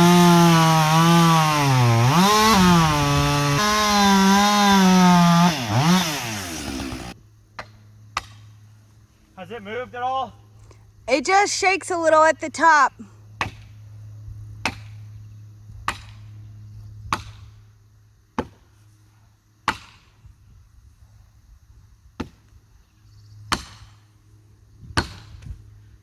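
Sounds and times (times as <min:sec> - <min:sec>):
hammer striking felling wedges: 0:00.0 - 0:08.4.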